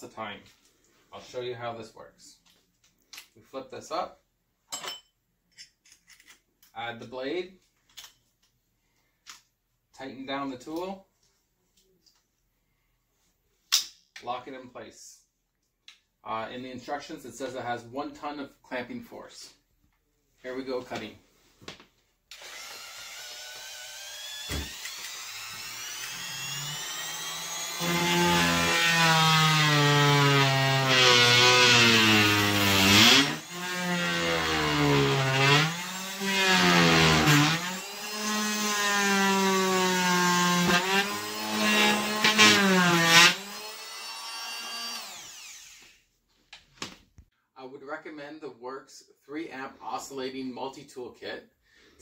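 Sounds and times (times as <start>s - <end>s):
oscillating multi-tool cutting wood: 22.4s - 46.0s.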